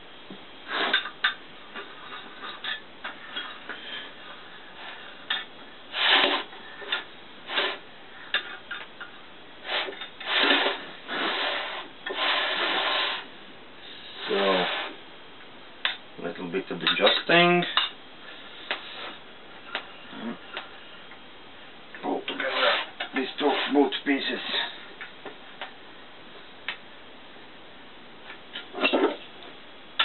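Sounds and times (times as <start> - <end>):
metal-on-metal scrapes: 0.7 - 1.2, 4.8 - 8.6, 9.6 - 13.2, 22.4 - 24.8.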